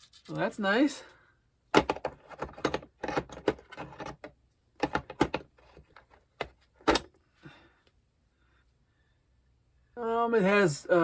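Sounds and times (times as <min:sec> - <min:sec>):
metal tools clicking and clinking: 0:00.0 - 0:00.6.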